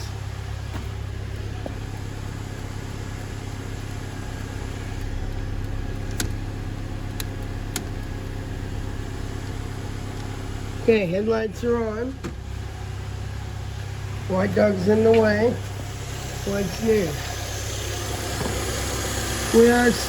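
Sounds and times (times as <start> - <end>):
light ticks: 0.0 - 10.6
car engine idling: 0.0 - 20.0.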